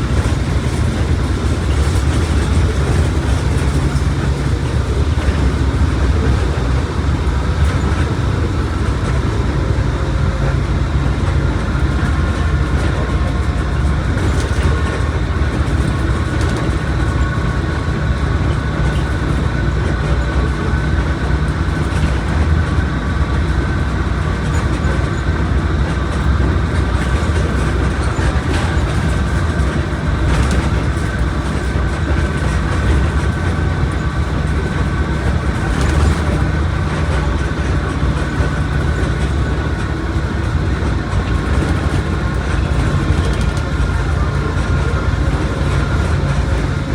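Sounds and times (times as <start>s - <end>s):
bus engine and road rumble: 0.0s - 46.9s.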